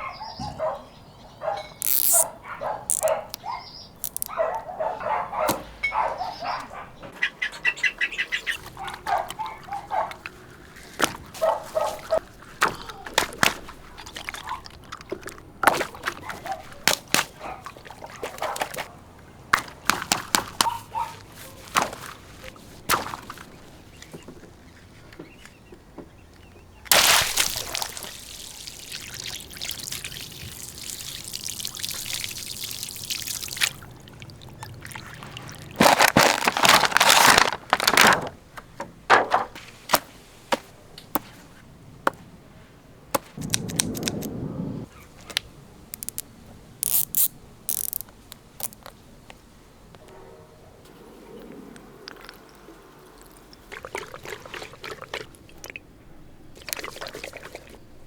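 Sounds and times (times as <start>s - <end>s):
toy handling knocks and squeaks: 1.6s - 2.3s, 2.9s - 4.6s, 46.0s - 48.9s
water pouring and sloshing: 8.4s - 25.4s, 26.9s - 38.4s, 51.4s - 58.0s
steady rush of water: 26.9s - 35.8s.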